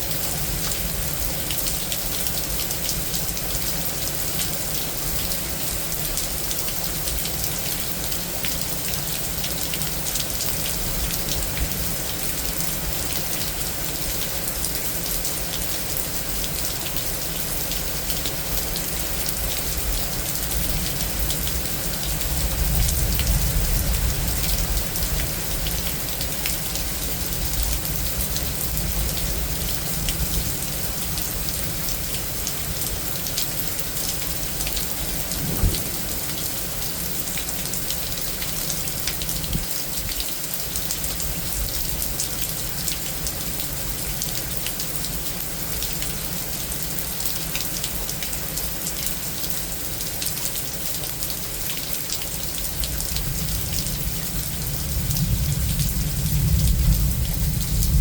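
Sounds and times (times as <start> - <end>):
heavy rain falling: 0.0 - 58.0
low roll of thunder: 34.4 - 37.5, 53.2 - 58.0.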